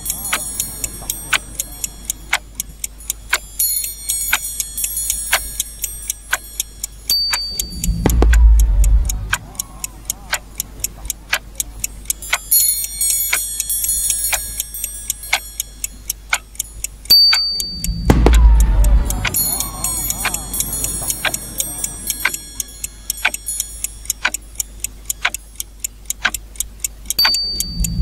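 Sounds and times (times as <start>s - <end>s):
high chiming tones: 0.0s - 9.4s, 12.4s - 24.1s, 27.2s - 28.0s
clock ticking: 0.0s - 28.0s.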